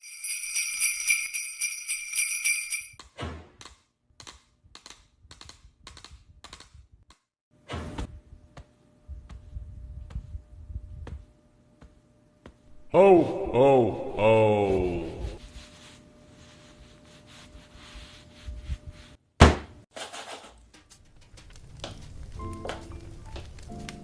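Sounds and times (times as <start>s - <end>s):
jingle bells shaking: 0.0s - 3.0s.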